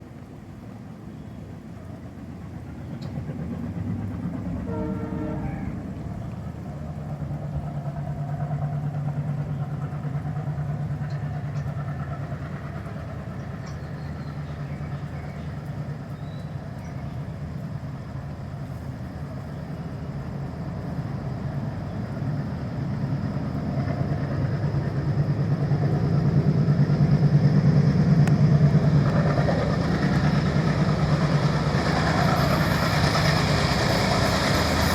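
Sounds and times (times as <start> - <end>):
diesel locomotive engines chugging: 0.0 - 34.9
locomotive horn: 4.6 - 6.2
thin high whine: 4.6 - 6.3.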